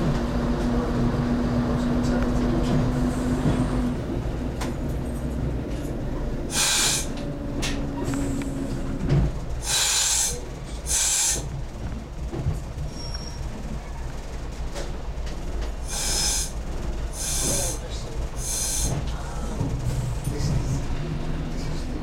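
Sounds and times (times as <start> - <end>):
diesel engines rumbling: 0.0 - 22.0
short bursts of hiss: 6.5 - 7.1, 9.6 - 11.4.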